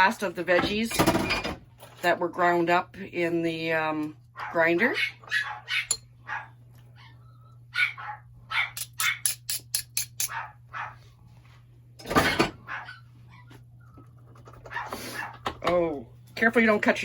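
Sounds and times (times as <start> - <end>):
steady low hum: 0.0 - 17.0
dog barking: 4.4 - 6.6, 7.7 - 9.3, 10.3 - 11.0, 12.6 - 13.1, 14.7 - 15.4.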